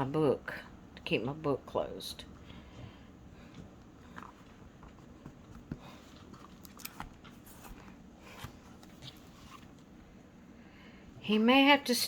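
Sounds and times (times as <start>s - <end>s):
paper pages rustling: 4.0s - 9.9s.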